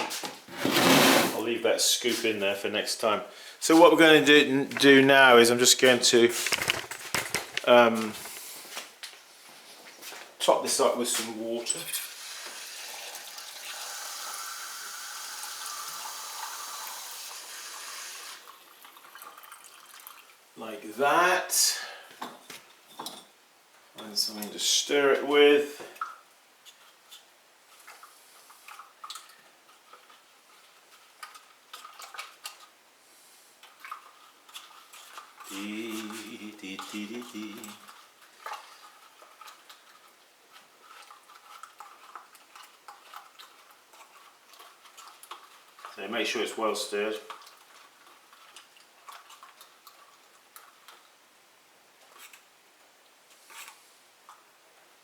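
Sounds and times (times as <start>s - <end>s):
stirrer knocking and scraping jar: 0.0s - 1.4s, 5.6s - 8.7s, 33.6s - 51.0s.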